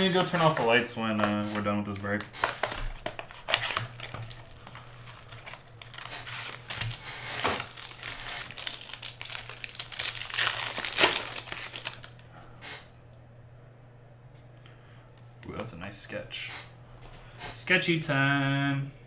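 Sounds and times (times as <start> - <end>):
card pack wrappers tearing and crinkling: 0.0 - 12.3.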